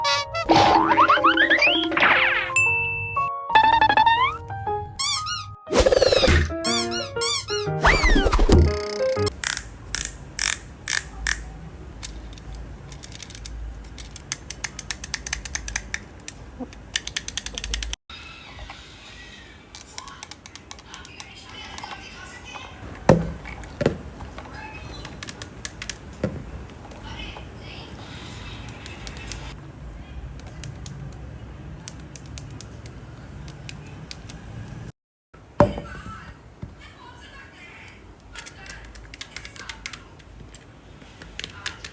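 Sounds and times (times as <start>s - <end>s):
plastic clicking and tapping: 19.8s - 27.4s.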